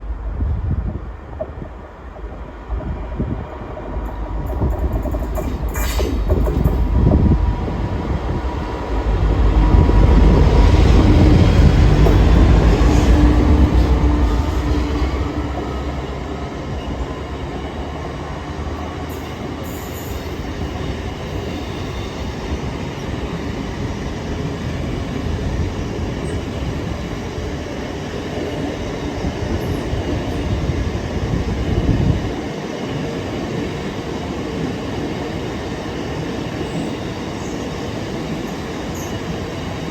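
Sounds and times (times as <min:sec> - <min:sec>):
diesel locomotive engine rumble: 0:00.0 - 0:39.9
wagons wheel-on-rail noise: 0:01.2 - 0:23.9.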